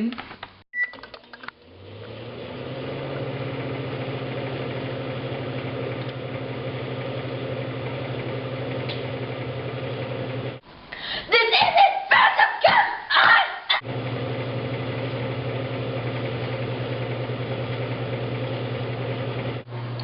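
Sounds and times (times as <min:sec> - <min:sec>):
microwave beep: 0:00.7 - 0:01.2
microwave running hum: 0:00.8 - 0:10.6, 0:13.8 - 0:20.0.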